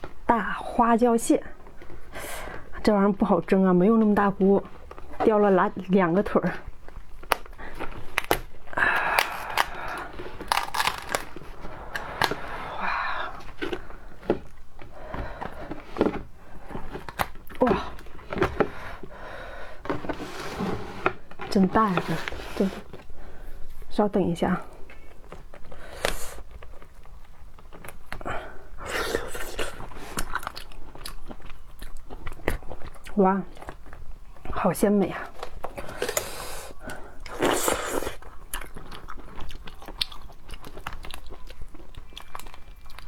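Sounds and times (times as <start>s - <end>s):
crinkling and crackling: 0.0s - 43.0s
crab shell clicking and cracking: 7.1s - 12.4s
scraping and rustling: 19.8s - 23.1s.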